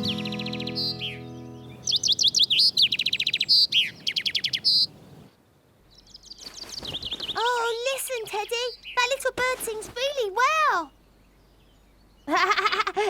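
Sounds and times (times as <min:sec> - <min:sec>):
soft background music: 0:00.0 - 0:02.5
bird chirping and trilling: 0:00.0 - 0:05.0, 0:05.9 - 0:09.8.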